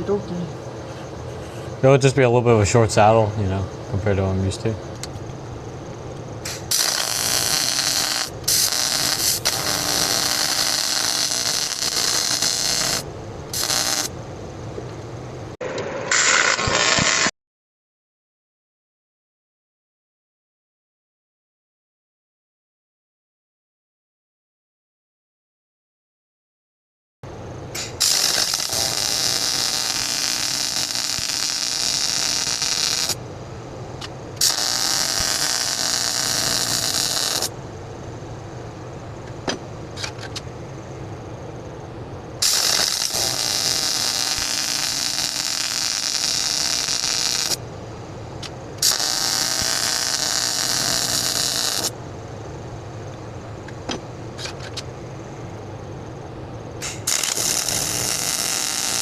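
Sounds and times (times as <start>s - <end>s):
steady low hum: 0.0s - 16.1s, 27.3s - 59.0s
welding arc crackling and hissing: 6.4s - 14.2s, 16.1s - 17.3s, 27.7s - 33.2s, 34.0s - 37.6s, 42.4s - 47.6s, 48.4s - 52.0s, 56.8s - 59.0s.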